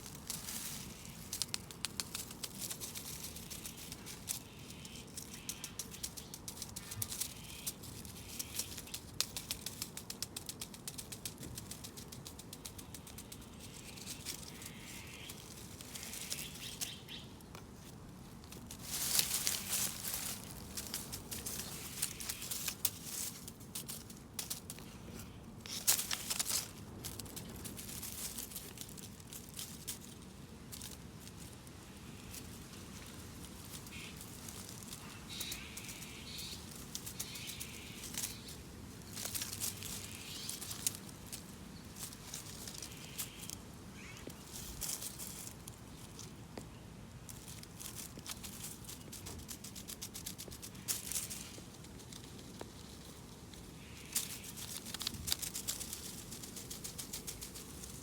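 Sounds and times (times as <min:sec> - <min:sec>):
light rustling: 0:00.0 - 0:43.6.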